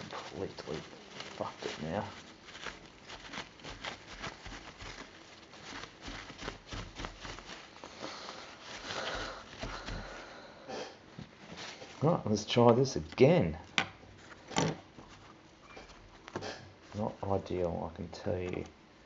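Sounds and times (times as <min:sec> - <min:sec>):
handling clicks and rustles: 0:00.0 - 0:10.2, 0:11.2 - 0:18.8.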